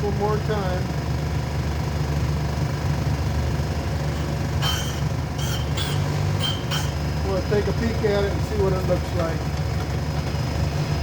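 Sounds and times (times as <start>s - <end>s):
grinder motor hum: 3.1s - 10.0s
short grinding rasps: 4.0s - 7.2s.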